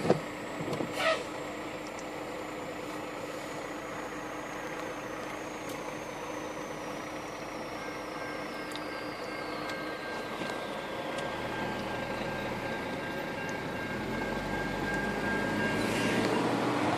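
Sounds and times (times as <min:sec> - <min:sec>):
high whine falling in pitch: 0:00.0 - 0:16.9
freight train rumbling on tracks: 0:08.2 - 0:16.9.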